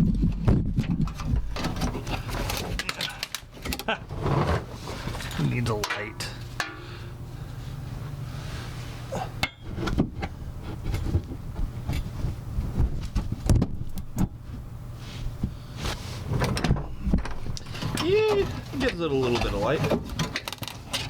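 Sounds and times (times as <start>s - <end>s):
steady low hum: 0.0s - 21.0s
work light clunking and knocking: 16.3s - 21.0s.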